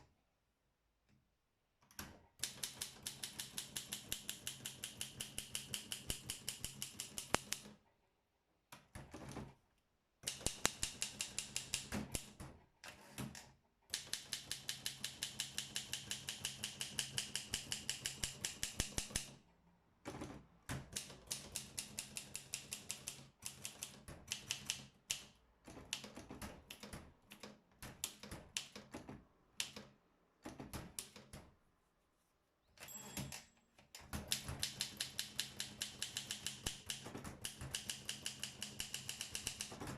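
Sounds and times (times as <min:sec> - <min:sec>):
typewriter keystrokes: 0:02.0 - 0:07.8, 0:10.2 - 0:12.4, 0:13.9 - 0:19.4, 0:20.1 - 0:31.4, 0:34.0 - 0:39.9
typewriter bell ring: 0:32.8 - 0:33.6.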